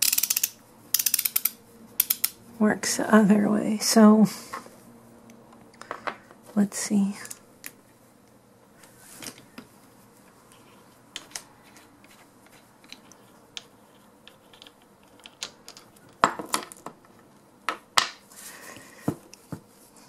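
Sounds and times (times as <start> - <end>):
torque wrench ratchet clicking: 0.0 - 2.4.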